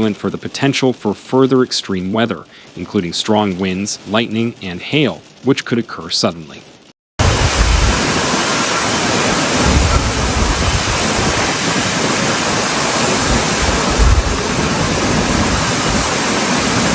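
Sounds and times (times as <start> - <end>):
heavy rainstorm: 0.0 - 16.9
gale-force wind: 7.2 - 16.9
wind buffeting microphone: 7.2 - 16.9.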